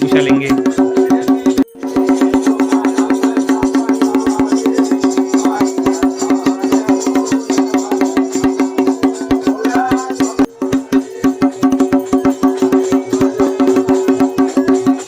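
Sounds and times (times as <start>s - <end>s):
fast percussion beat: 0.0s - 15.0s.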